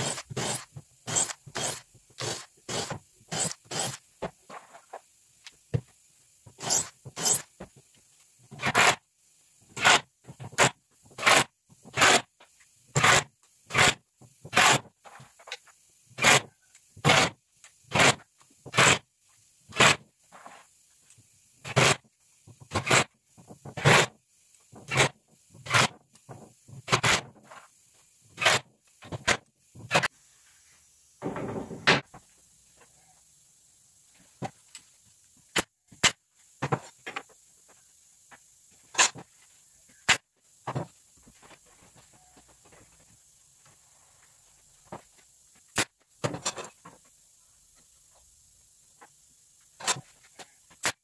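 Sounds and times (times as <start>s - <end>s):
scraping strokes on wood: 0.0s - 5.1s, 6.5s - 7.8s.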